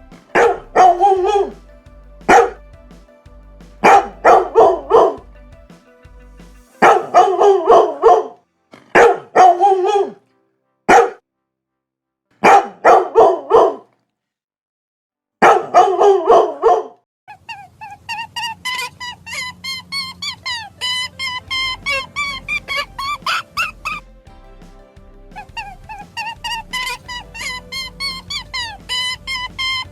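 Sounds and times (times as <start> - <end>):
dog barking loudly: 10.9 - 11.2, 12.4 - 13.8, 15.4 - 16.9.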